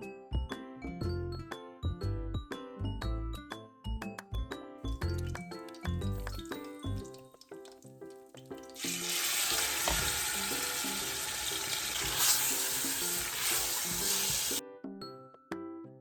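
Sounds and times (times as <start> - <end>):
plucked-string background music: 4.4 - 15.8
food sizzling in hot oil: 5.2 - 14.6.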